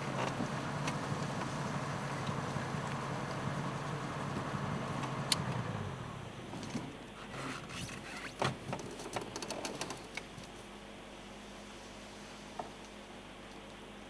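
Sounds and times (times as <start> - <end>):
vehicle engine idling: 0.0 - 6.6.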